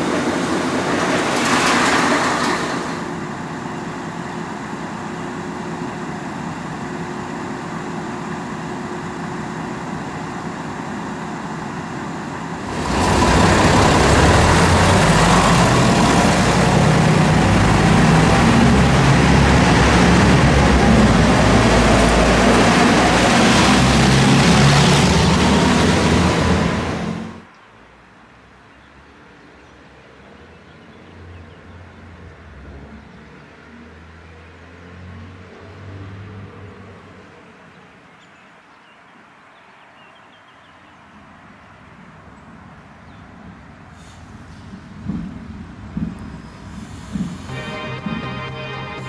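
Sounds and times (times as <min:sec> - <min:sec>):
railbus diesel engine: 0:00.0 - 0:28.8, 0:40.6 - 0:49.0.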